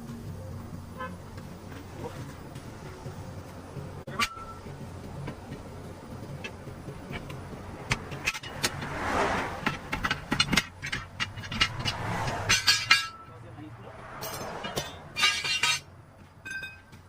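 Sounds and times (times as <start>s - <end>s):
vehicle engine humming: 0.0s - 17.0s
sharp clicks and knocks: 5.2s - 13.3s.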